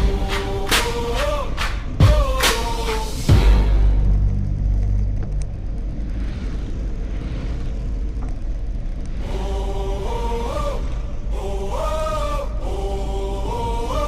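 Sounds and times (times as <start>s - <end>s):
hiss: 0.0s - 3.5s
wordless chant-like singing: 0.0s - 4.0s, 9.1s - 14.0s
steady low bass: 0.0s - 14.0s.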